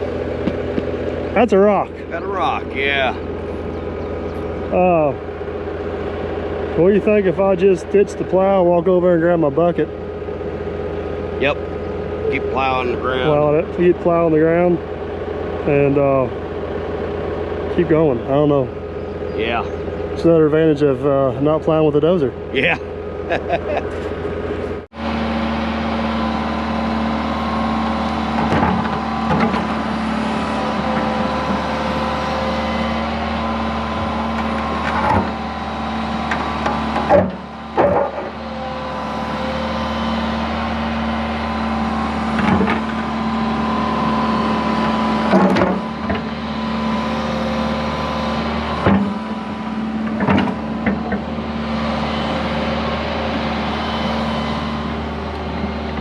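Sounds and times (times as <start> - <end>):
diesel machine humming: 0.0 - 56.0
metal clanks and knocks: 36.3 - 38.4, 50.0 - 51.3.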